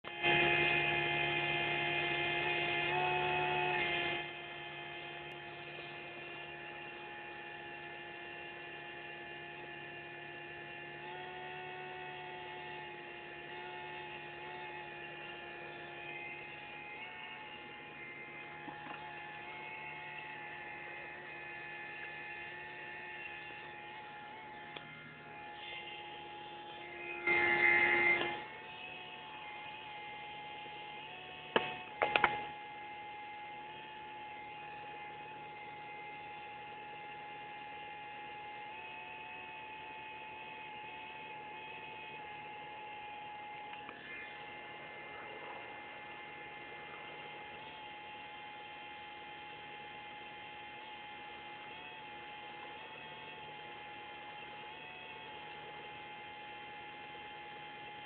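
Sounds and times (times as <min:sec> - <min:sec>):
electric fuel pump whining: 0:00.0 - 0:58.0
loud noise: 0:13.2 - 0:30.0
sharp clicks: 0:31.5 - 0:32.5.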